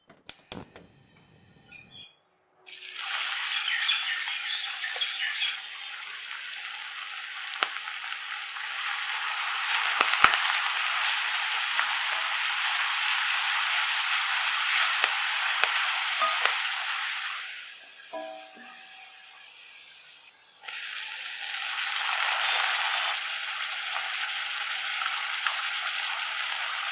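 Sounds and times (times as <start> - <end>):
food sizzling in oil in a pan: 2.7 - 26.9
spoon knocking against pan: 15.6 - 16.6.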